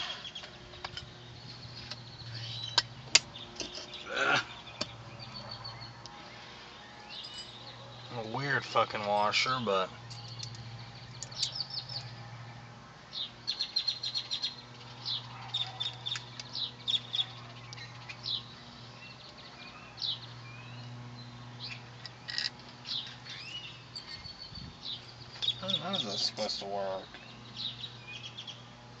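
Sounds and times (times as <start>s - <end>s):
small birds chirping: 0.0s - 29.0s.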